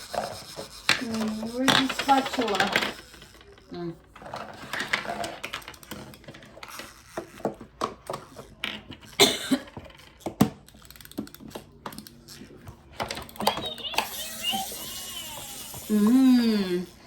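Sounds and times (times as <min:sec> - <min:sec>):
plastic toy pieces clicking: 0:00.4 - 0:08.6, 0:10.0 - 0:12.4, 0:13.0 - 0:16.1.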